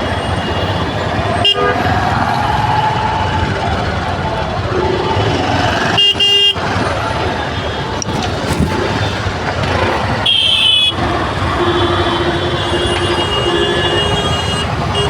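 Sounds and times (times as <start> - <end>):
vehicle horn: 0.0 - 2.0, 4.8 - 6.8, 8.9 - 15.0
road traffic noise: 0.0 - 15.0.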